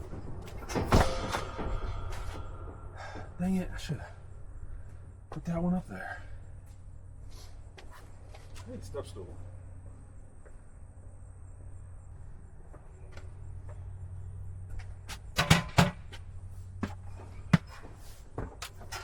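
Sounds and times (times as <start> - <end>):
objects knocking and clanking: 0.0 - 3.4, 16.8 - 19.0
low steady hum: 0.0 - 19.0.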